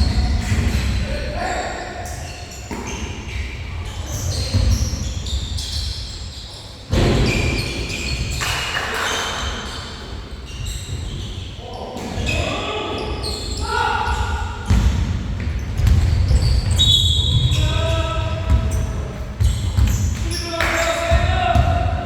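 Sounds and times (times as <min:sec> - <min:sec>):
sneakers squeaking on court: 0:00.0 - 0:22.0
basketball bouncing: 0:14.7 - 0:17.6, 0:19.4 - 0:20.4, 0:21.1 - 0:22.0.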